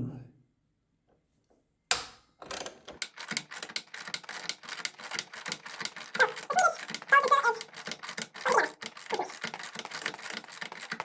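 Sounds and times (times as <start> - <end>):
ratchet wrench clicking: 2.5 - 11.0.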